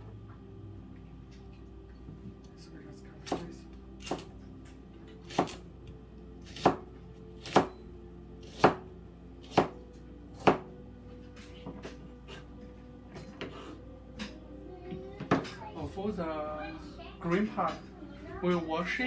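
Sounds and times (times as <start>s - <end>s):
knife chopping on cutting board: 3.2s - 4.3s, 5.3s - 5.6s, 6.4s - 7.8s, 8.4s - 8.8s, 9.4s - 9.8s, 10.4s - 10.7s.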